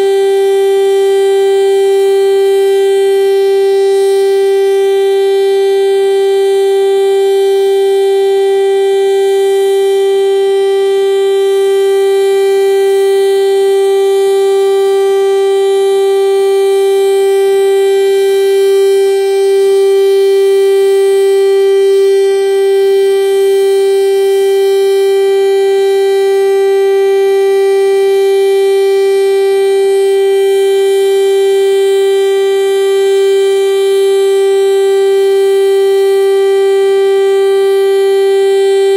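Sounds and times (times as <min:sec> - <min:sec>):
warning siren steady pitch: 0:00.0 - 0:38.9.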